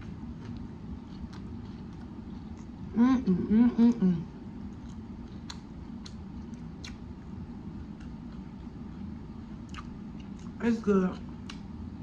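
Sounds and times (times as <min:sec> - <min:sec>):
person chewing: 0:00.0 - 0:03.4, 0:04.6 - 0:10.6
steady low hum: 0:00.0 - 0:12.0.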